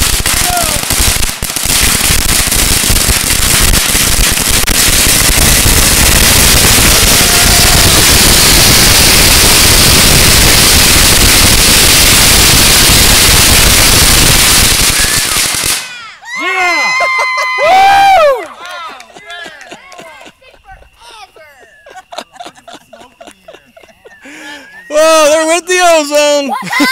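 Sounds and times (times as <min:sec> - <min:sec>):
firecrackers crackling barrage: 0:00.0 - 0:16.8.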